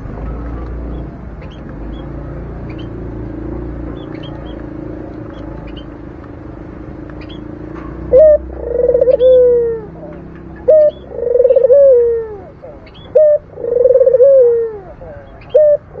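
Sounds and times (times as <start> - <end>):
small birds chirping: 0.0 - 16.0
dove cooing: 7.2 - 16.0.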